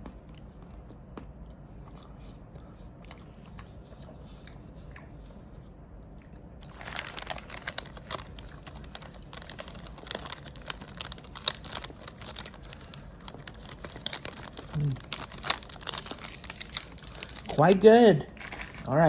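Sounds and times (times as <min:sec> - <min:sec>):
wrapper crinkling: 0:06.6 - 0:19.0.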